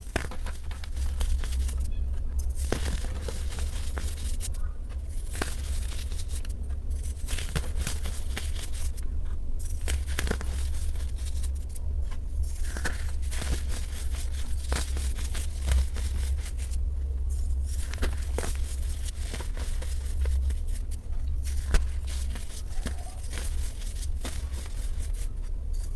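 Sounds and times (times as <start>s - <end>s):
baking soda crunching: 12.3s - 25.9s.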